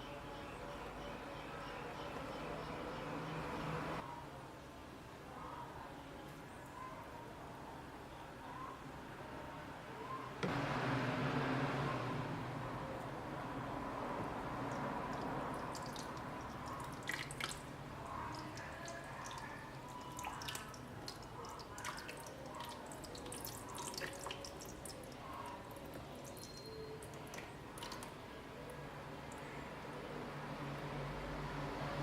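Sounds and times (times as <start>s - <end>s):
slime dripping and squishing: 14.6s - 28.1s.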